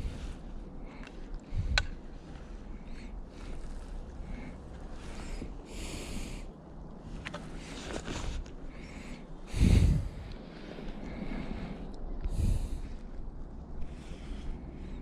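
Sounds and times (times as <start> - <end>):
person breathing and sniffing: 7.5 - 13.1.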